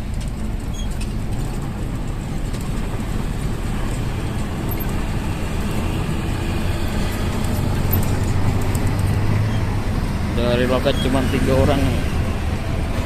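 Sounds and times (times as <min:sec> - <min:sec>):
road noise: 0:00.0 - 0:13.0
vehicle engine rumble: 0:00.0 - 0:13.0.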